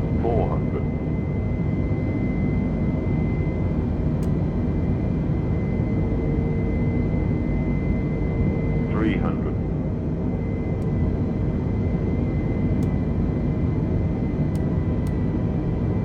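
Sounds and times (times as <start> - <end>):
airflow and engines rumbling: 0.0 - 16.0
faint high whine: 4.4 - 14.4.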